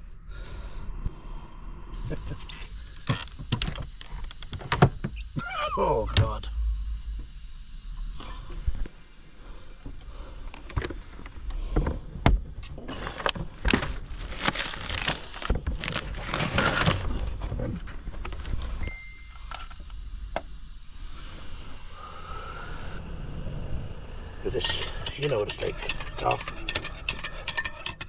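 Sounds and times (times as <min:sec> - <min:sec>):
steady low rumble: 0:00.0 - 0:04.0, 0:05.8 - 0:12.9, 0:17.0 - 0:27.0
rustling: 0:09.5 - 0:18.8.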